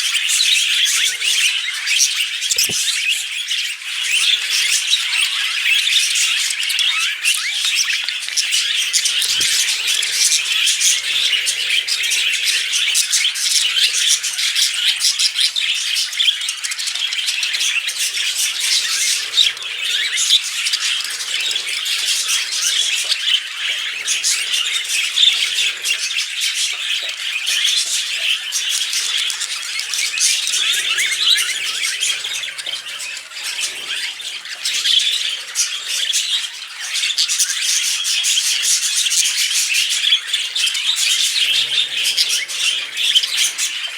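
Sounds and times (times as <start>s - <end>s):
budgerigars warbling and chattering: 0.0s - 43.9s.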